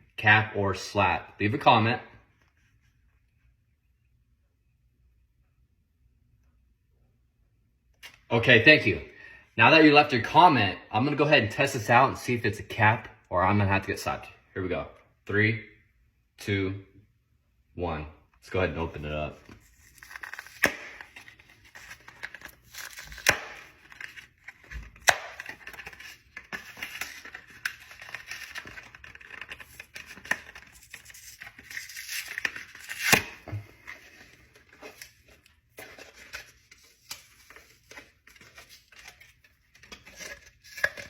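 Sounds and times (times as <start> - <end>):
cardboard tearing and rustling: 19.6 - 41.0.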